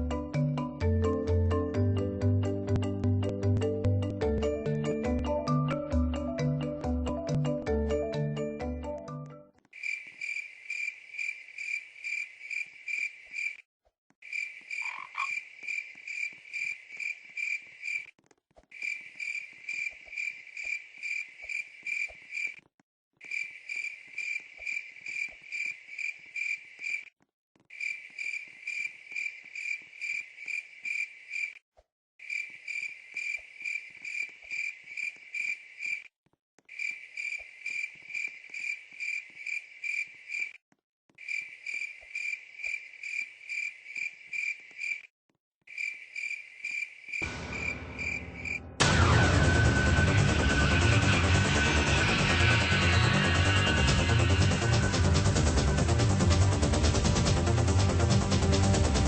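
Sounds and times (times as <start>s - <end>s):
cricket chirping: 9.8s - 13.6s, 14.2s - 18.1s, 18.8s - 22.6s, 23.2s - 27.1s, 27.7s - 31.6s, 32.2s - 36.1s, 36.7s - 40.6s, 41.2s - 45.1s, 45.7s - 48.6s.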